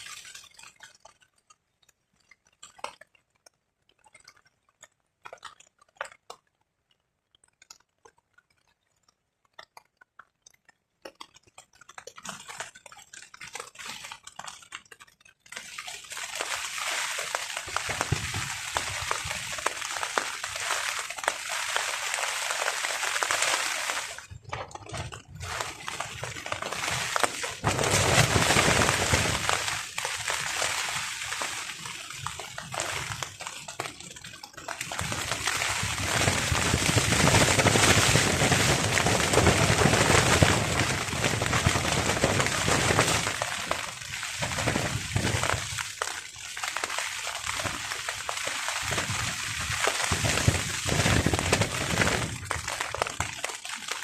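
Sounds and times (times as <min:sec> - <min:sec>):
heavy rain on a tarp: 0:00.0 - 0:00.8, 0:12.3 - 0:14.7, 0:15.5 - 0:54.0.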